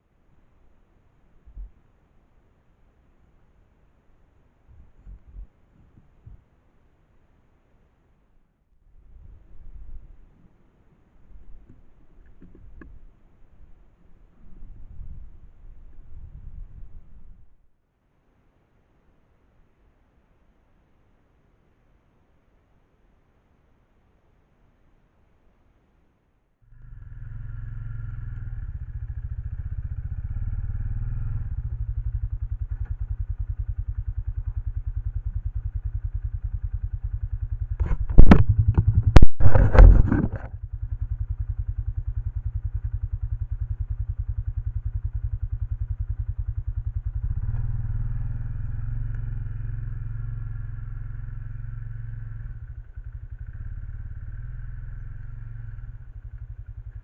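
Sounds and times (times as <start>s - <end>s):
small engine running: 26.7s - 57.0s
loud knocks and clatter: 37.8s - 40.5s.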